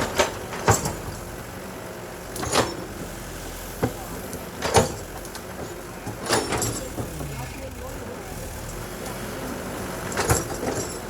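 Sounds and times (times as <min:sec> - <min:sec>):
heavy machinery engine running: 0:00.0 - 0:11.0.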